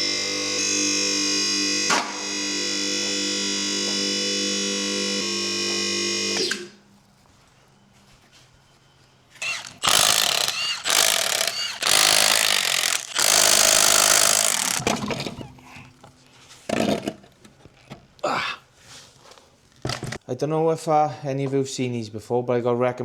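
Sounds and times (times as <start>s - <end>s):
power tool running in bursts: 0.0s - 6.7s, 9.4s - 14.9s.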